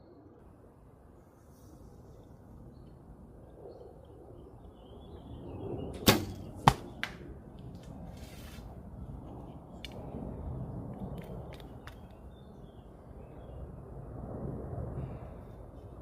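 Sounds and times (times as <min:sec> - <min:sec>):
arrow striking target: 0:06.0 - 0:07.2.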